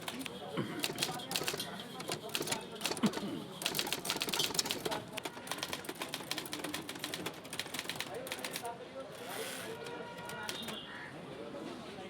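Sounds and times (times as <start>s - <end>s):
typewriter key strikes: 0.8s - 8.6s.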